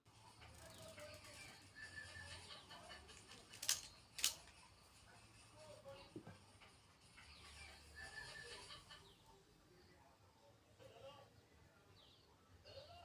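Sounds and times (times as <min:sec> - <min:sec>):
faint background chirping: 0:00.0 - 0:13.0
air rifle clicks: 0:03.3 - 0:04.6.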